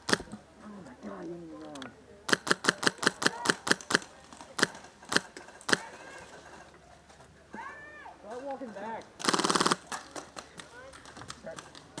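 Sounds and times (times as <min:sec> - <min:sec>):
airsoft rifle shots: 0:00.0 - 0:00.3, 0:02.3 - 0:06.1, 0:09.2 - 0:09.8.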